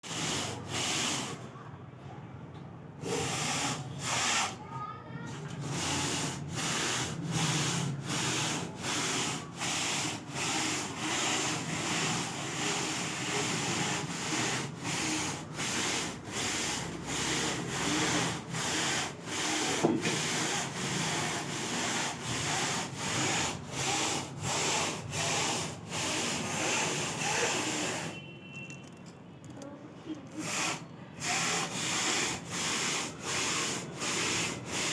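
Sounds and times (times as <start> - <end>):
knitting machine rubbing and sliding: 0.0 - 1.5, 3.0 - 4.6, 5.3 - 28.2, 30.3 - 34.9.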